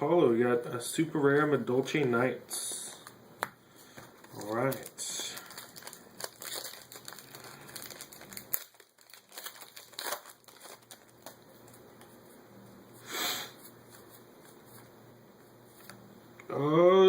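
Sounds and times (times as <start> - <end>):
foil wrapper crinkling: 4.2 - 12.2
cards being handled: 13.6 - 16.1.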